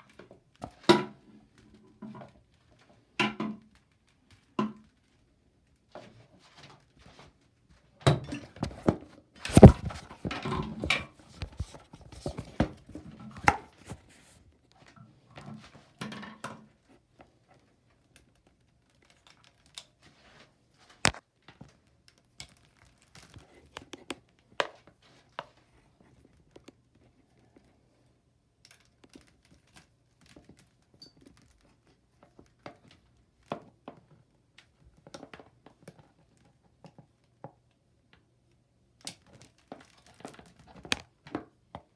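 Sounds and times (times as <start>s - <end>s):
knocks and clicks of handling parts: 8.1s - 14.4s.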